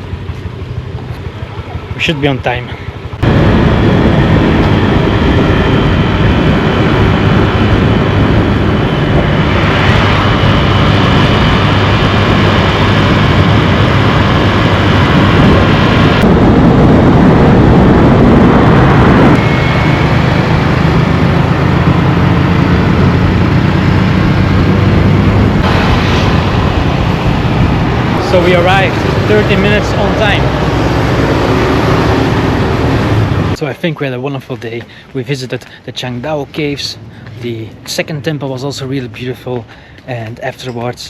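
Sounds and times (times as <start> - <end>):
scooter engine running: 0.0 - 33.6
wind rushing over microphone: 0.0 - 33.6.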